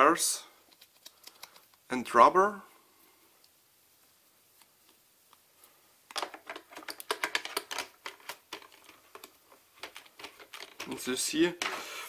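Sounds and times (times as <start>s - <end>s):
plastic parts clicking and rattling: 6.1s - 11.7s.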